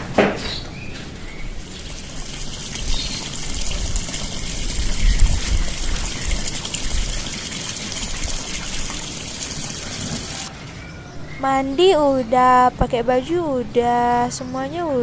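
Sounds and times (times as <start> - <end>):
water running and splashing: 1.6 - 10.5.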